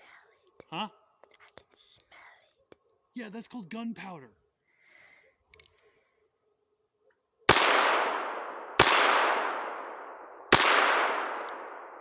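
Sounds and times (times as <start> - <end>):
revolver gunshots: 7.5 - 12.0.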